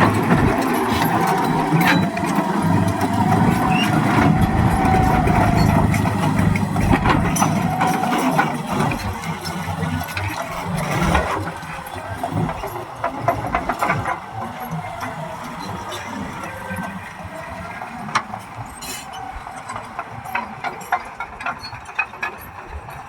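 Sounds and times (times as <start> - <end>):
steady whine: 0.0 - 9.3
bulldozer diesel engine running: 0.0 - 23.0.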